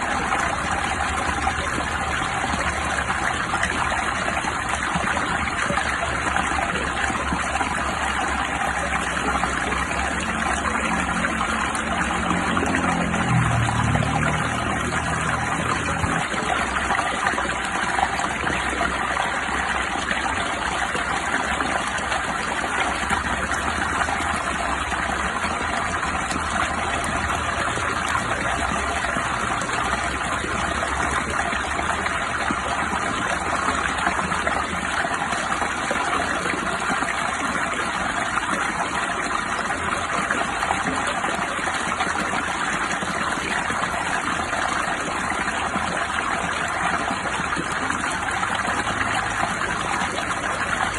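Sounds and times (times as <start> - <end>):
water rushing: 0.0 - 50.9.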